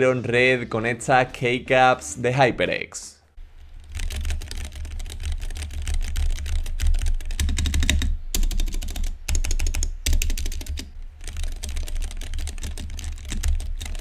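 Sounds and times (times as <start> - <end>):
fast mechanical keyboard typing: 3.7 - 14.0.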